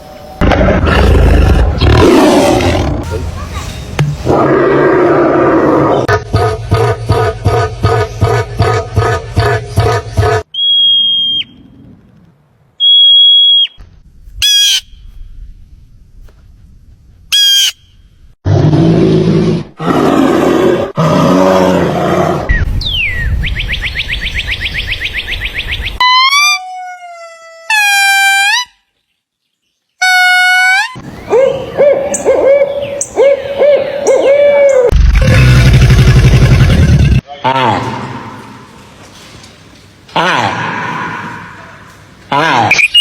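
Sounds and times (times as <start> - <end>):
brief animal chirps: 42.7 - 43.0
high animal whistles: 42.7 - 43.0.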